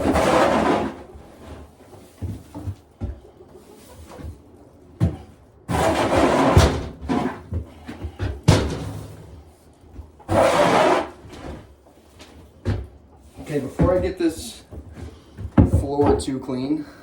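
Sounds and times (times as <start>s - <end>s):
tool scraping bedding: 0.0s - 2.8s, 5.0s - 9.4s, 10.2s - 11.8s, 12.6s - 16.4s.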